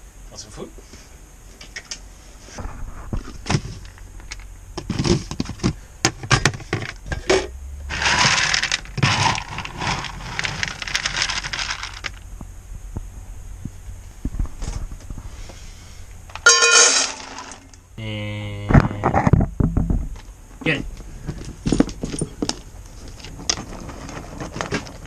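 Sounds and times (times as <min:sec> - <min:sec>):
dry kibble rattling into bowl: 0:07.9 - 0:12.2.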